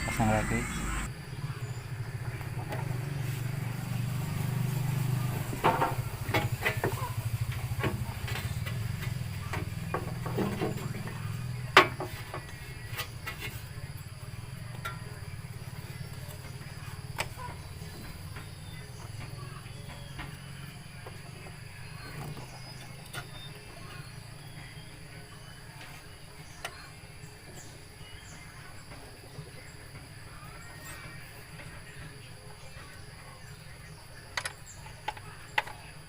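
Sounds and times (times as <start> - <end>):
low hum: 0.0 - 1.1.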